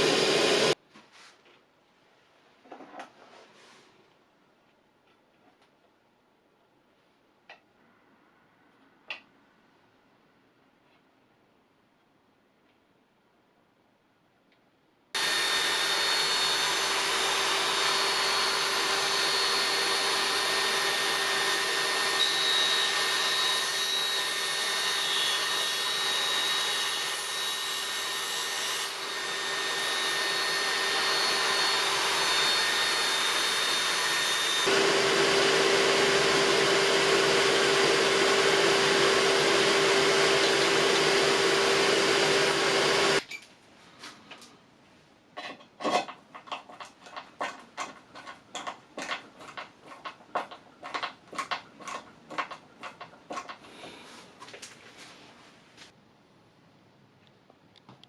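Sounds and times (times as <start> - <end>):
electric power tool motor whining: 0.0 - 0.8, 15.2 - 27.1, 28.9 - 43.2.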